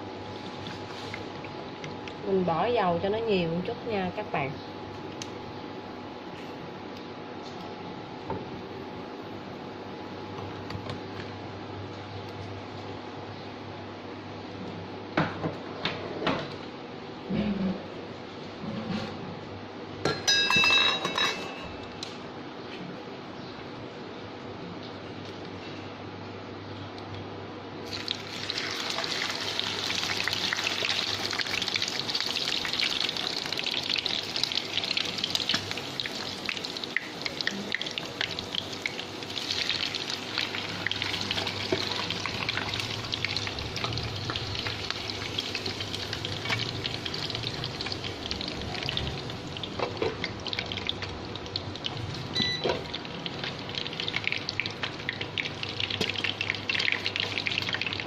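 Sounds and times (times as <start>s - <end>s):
quail sizzling in hot oil: 27.8s - 58.0s.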